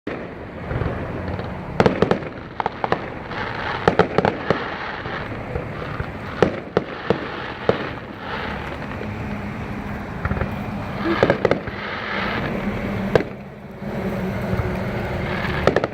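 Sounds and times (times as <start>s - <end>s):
fireworks bangs and pops: 0.1s - 15.9s
steady rushing noise: 0.1s - 15.9s.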